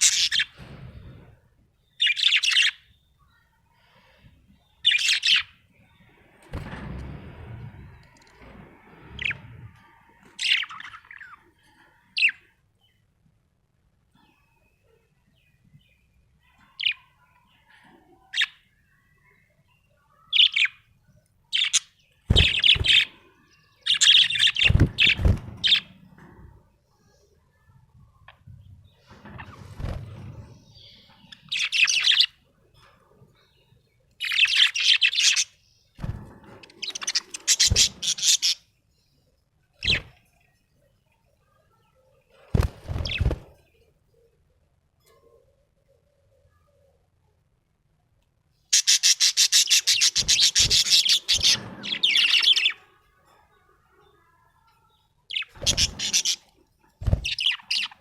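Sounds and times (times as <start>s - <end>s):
low rumbling thuds: 6.0s - 9.9s
budgerigar chirping: 48.8s - 51.4s.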